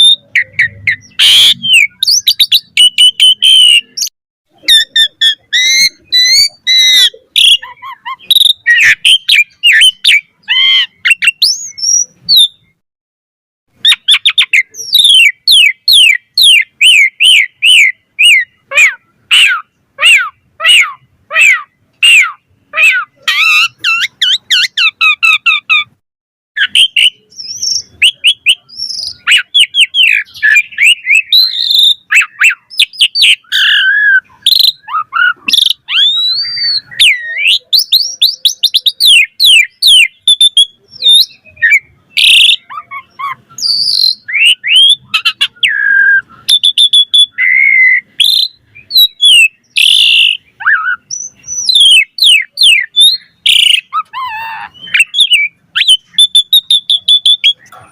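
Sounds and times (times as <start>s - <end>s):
starling singing varied song: 0.0s - 12.8s, 13.8s - 26.0s, 26.6s - 57.9s.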